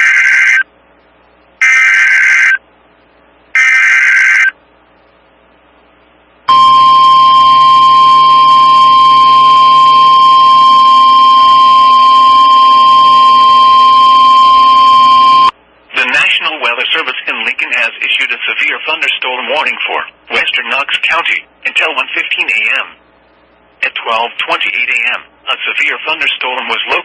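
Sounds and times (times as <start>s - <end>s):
single-tone warning alarm: 1.6s - 2.6s, 3.6s - 4.5s, 6.5s - 15.5s.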